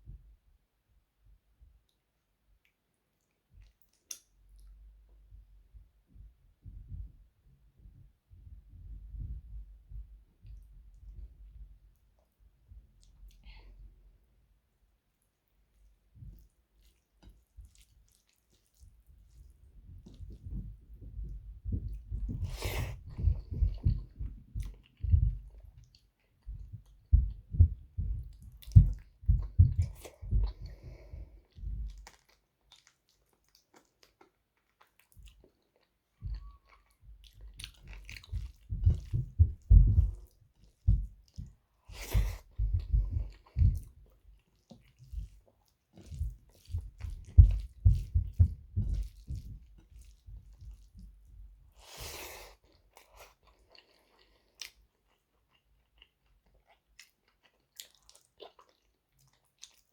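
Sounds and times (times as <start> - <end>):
wet chewing: 15.8 - 59.9.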